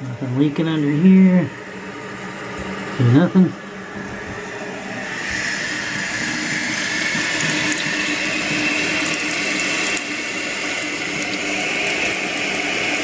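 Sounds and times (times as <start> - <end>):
toilet tank refilling with water: 3.7 - 13.0.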